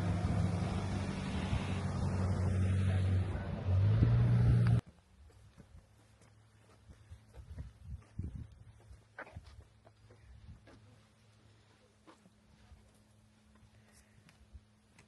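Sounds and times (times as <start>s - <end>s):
vehicle engine drone: 0.0s - 4.8s
road noise: 0.0s - 5.1s.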